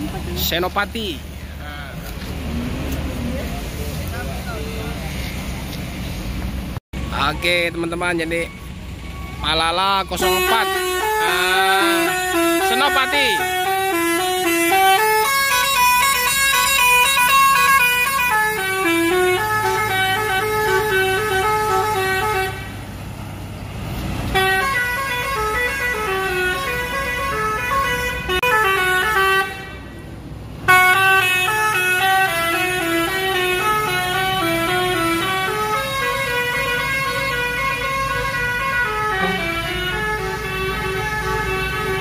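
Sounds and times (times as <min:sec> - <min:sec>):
musical bus horn melody: 0:10.1 - 0:22.8, 0:24.3 - 0:30.0, 0:30.6 - 0:42.0.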